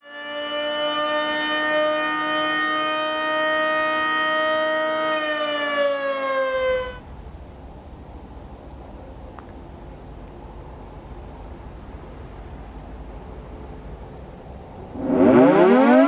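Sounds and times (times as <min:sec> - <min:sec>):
warning siren chord: 0:00.0 - 0:07.0, 0:14.9 - 0:16.0
low rumbling noise: 0:06.6 - 0:16.0.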